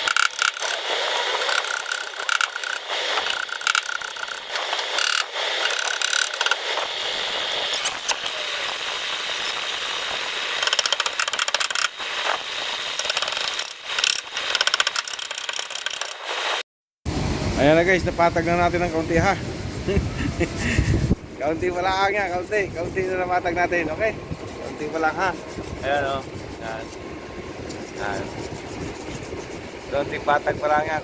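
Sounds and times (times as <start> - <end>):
quick metallic clicks: 0.0 - 6.9, 10.5 - 12.0, 13.0 - 16.3.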